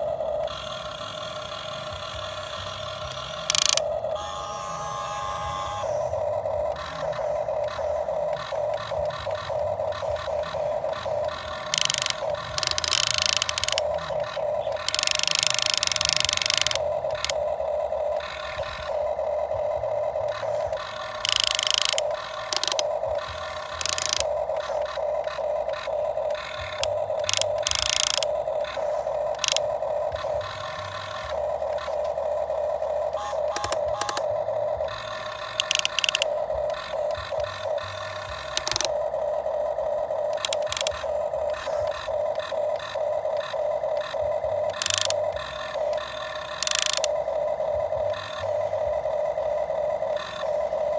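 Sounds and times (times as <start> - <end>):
electric motors whining: 0.0 - 50.9.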